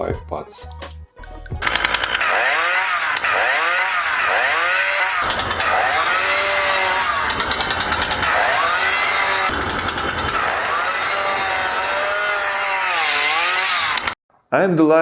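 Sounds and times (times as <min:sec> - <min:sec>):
chainsaw engine revving: 0:01.6 - 0:14.2
rapid high clicking: 0:01.6 - 0:14.2.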